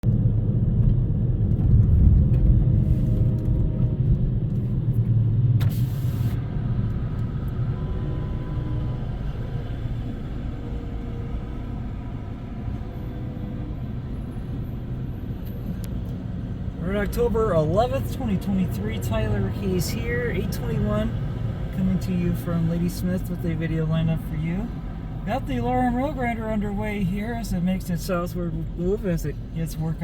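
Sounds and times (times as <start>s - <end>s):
diesel engines rumbling: 0.0s - 30.0s
short hiss: 5.6s - 6.4s.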